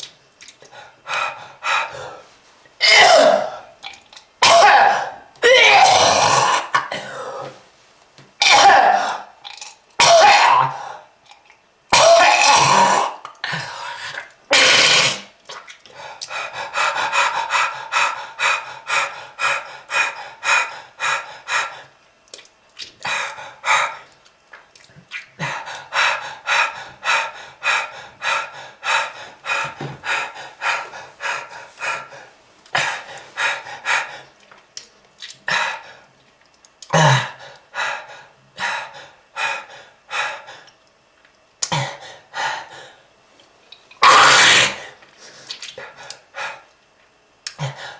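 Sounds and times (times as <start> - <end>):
person coughing: 2.8 - 3.6, 4.4 - 7.3, 12.0 - 13.6
person panting: 15.9 - 22.0, 25.4 - 34.4.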